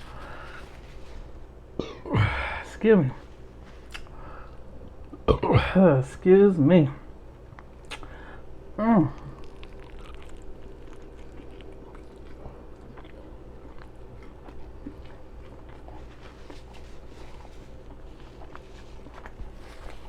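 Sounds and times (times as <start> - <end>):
person chewing with mouth smacking: 3.6 - 5.2, 7.5 - 8.2, 9.0 - 20.0.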